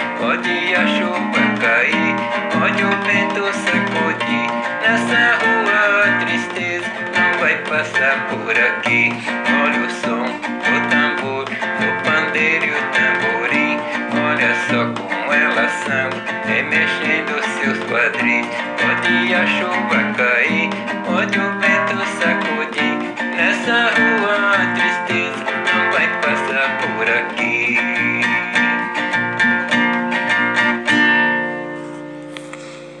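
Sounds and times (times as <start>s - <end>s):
rhythmic percussion: 0.0s - 31.5s
strummed plucked strings: 0.0s - 33.0s.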